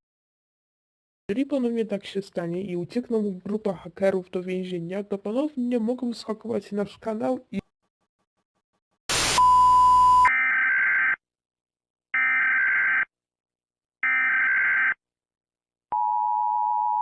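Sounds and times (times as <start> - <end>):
static burst: 9.1 - 9.7
loud steady beep: 9.1 - 10.3.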